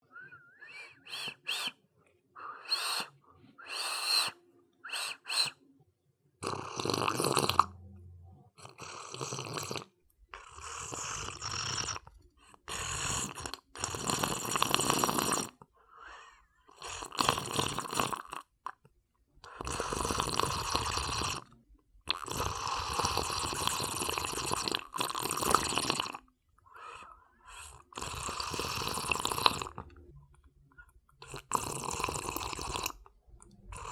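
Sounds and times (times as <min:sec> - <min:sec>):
person sipping a drink: 0:00.6 - 0:01.7, 0:02.4 - 0:05.6, 0:06.4 - 0:07.8, 0:08.6 - 0:15.6, 0:16.8 - 0:18.5, 0:22.1 - 0:26.2, 0:27.5 - 0:30.1, 0:31.2 - 0:33.9.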